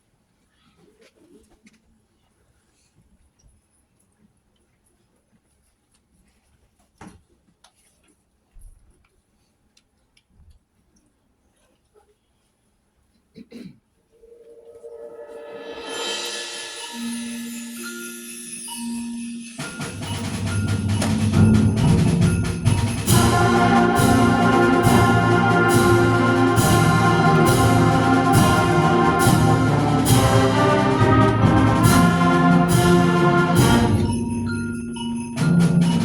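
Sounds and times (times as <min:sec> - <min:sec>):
sharp percussion accents: 0:14.2 - 0:36.0
concert band playing: 0:19.6 - 0:36.0.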